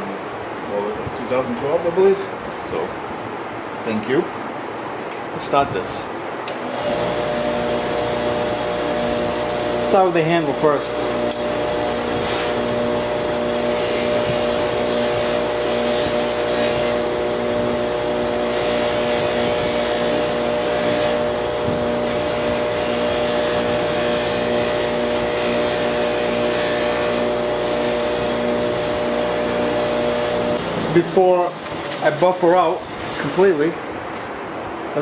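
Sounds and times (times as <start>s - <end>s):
buffing wheel humming: 6.5s - 33.6s
knife handle polished on wheel: 8.4s - 33.6s.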